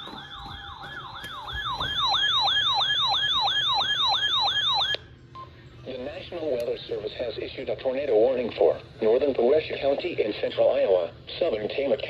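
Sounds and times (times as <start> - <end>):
electronic siren yelping: 0.0 - 5.1.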